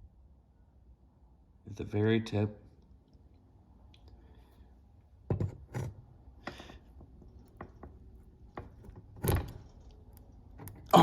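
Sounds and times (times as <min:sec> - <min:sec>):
pliers knocking on tabletop: 0:05.3 - 0:05.9.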